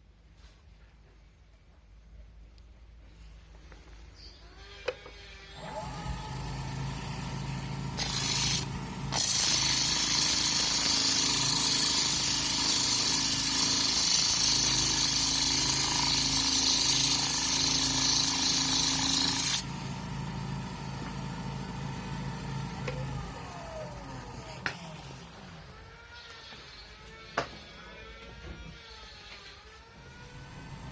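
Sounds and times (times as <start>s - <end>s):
wood lathe humming: 4.8s - 27.4s.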